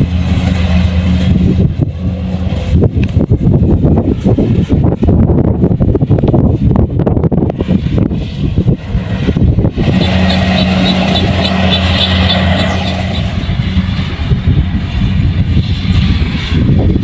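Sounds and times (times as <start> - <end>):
wind buffeting microphone: 0.0 - 17.0
harvester engine droning: 8.7 - 16.0.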